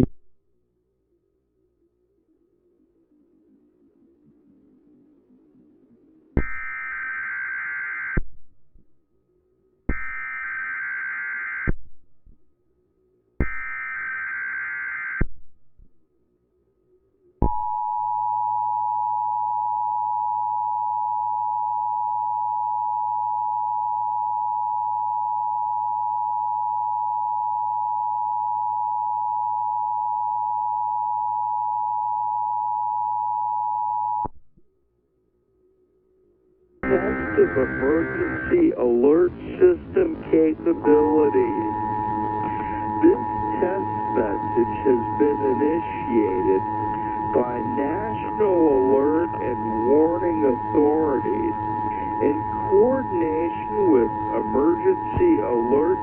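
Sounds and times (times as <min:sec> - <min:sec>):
digital data noise bursts: 0:36.8 - 0:56.0
harsh two-tone attention signal: 0:36.8 - 0:56.0.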